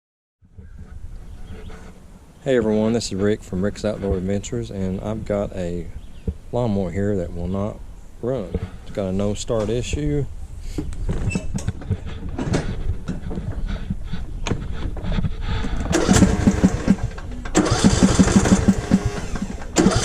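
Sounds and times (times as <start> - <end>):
lawn mower engine cranking: 15.8 - 20.0.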